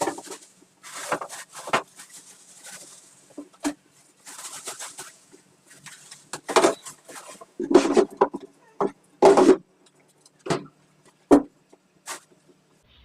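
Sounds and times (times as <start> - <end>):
food preparation knocks and rustles: 0.0 - 9.7.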